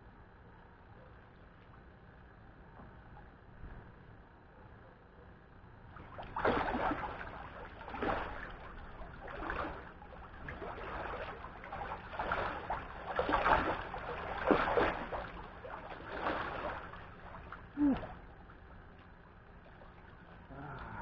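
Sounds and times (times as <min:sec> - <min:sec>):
pool water splashing: 0:05.9 - 0:21.0.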